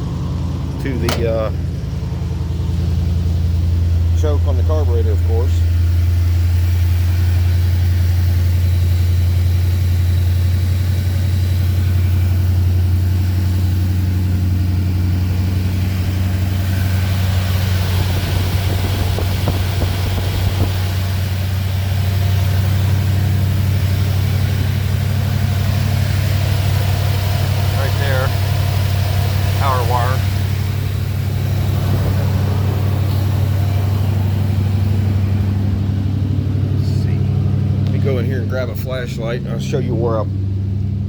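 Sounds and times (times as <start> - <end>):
pickup engine idling: 0.0 - 41.0
light knocks: 1.0 - 1.3.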